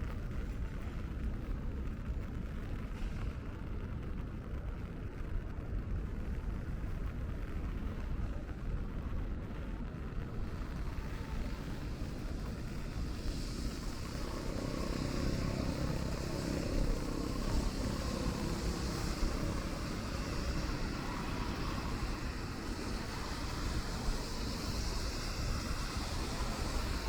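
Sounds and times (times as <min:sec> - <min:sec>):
traffic on wet roads: 0:00.0 - 0:27.0
rain hiss: 0:00.3 - 0:27.0
vehicle passing: 0:13.1 - 0:27.0.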